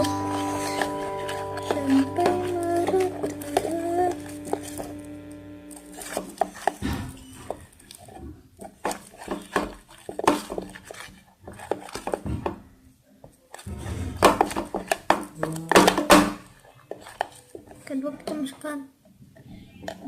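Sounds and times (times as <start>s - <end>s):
stirrer scraping a container: 0.0s - 5.0s, 5.7s - 12.3s, 13.5s - 15.1s, 16.4s - 18.5s.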